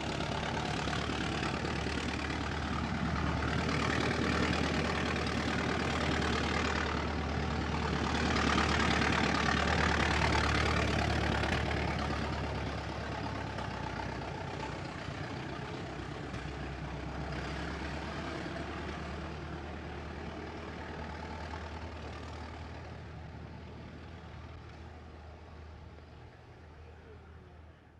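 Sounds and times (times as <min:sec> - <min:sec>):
car engine running: 0:00.0 - 0:20.2.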